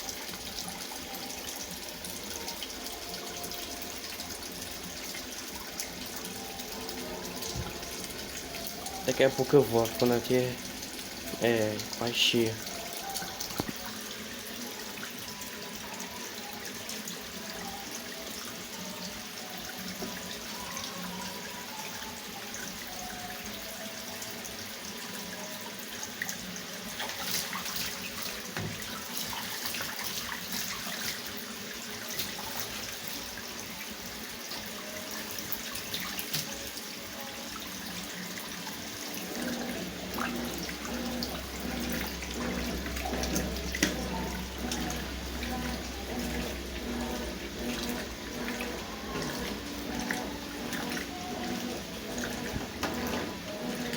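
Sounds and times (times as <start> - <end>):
water pouring into washing machine: 0.0 - 53.9.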